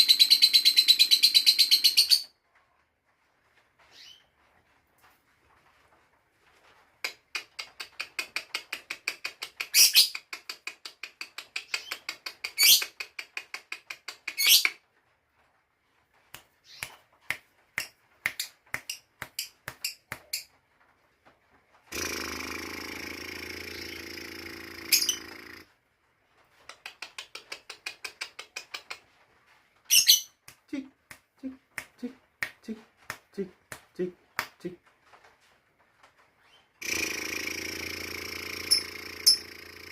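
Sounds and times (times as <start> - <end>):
lovebird chattering: 22.0 - 25.6, 36.8 - 39.9.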